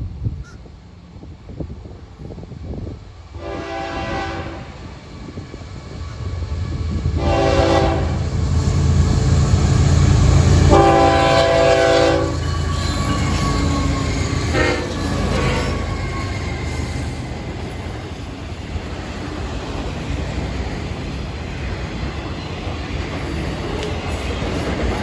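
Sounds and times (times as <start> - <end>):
freight train rumble: 0.0 - 25.0
locomotive horn blasts: 3.4 - 4.8, 7.2 - 8.4, 10.6 - 17.1.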